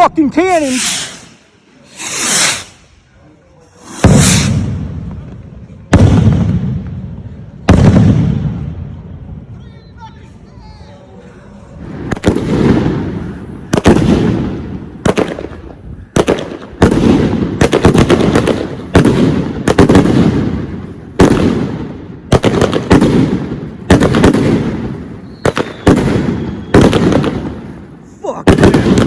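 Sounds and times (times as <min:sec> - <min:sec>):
fireworks booming with echo: 0:00.7 - 0:03.0, 0:03.8 - 0:09.5, 0:11.8 - 0:29.0.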